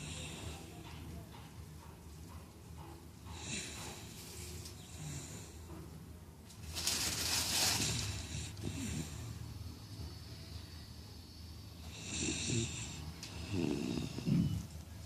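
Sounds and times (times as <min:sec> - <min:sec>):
dog snoring: 0:07.8 - 0:09.4, 0:11.8 - 0:14.7.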